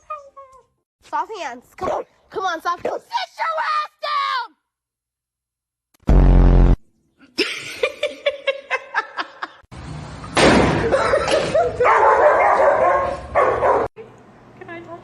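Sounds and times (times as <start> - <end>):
low buzzing sound: 6.0 - 6.8
person laughing: 7.2 - 9.7, 10.8 - 11.9.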